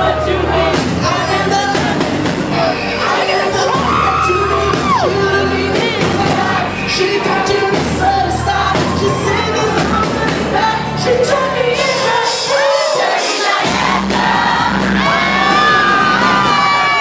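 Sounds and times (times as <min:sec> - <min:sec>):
band with heavy bass: 0:00.0 - 0:17.0
crowd whooping and shouting: 0:03.5 - 0:05.4, 0:08.2 - 0:10.0, 0:12.5 - 0:17.0.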